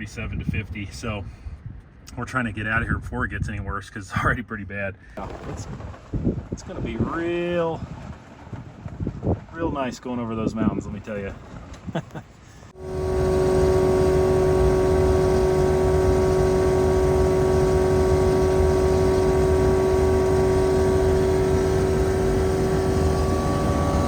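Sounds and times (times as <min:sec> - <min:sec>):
aircraft engine and propeller drone: 0:12.8 - 0:24.0.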